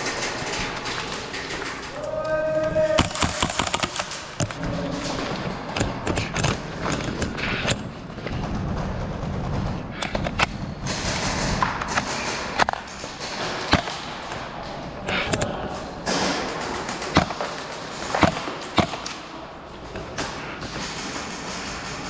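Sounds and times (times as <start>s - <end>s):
steady background noise: 0.0s - 22.0s
airsoft shots cracking: 16.3s - 19.4s.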